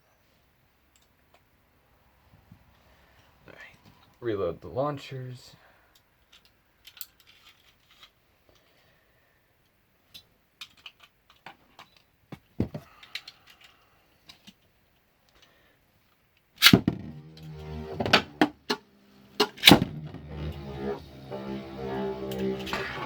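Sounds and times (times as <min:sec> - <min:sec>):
launcher snap: 0:16.6 - 0:18.8, 0:19.4 - 0:20.2.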